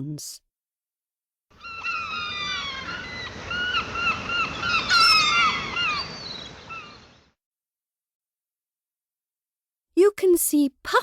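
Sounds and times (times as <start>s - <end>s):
seagulls screeching: 1.6s - 7.3s.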